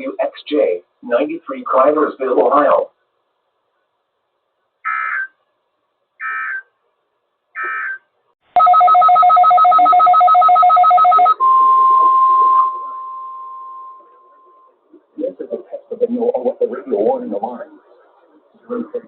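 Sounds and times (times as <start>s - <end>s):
digital data tone bursts: 4.9s - 5.4s, 6.2s - 6.7s
fast-pulsing two-tone beep: 8.6s - 14.7s.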